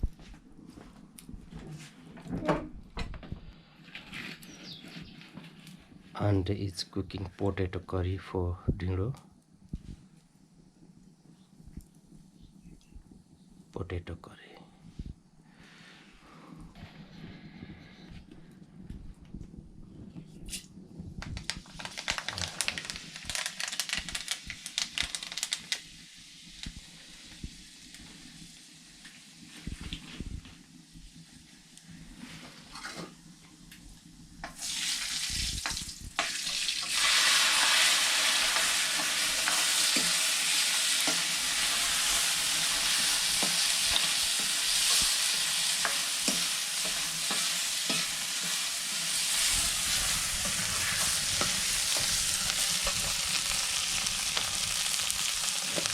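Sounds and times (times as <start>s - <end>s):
food sizzling in a pan: 21.4s - 55.9s.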